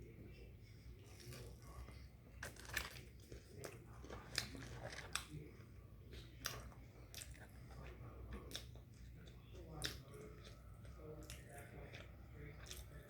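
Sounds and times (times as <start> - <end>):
person chewing food: 1.0 - 13.0
crisp crunch: 1.1 - 8.8.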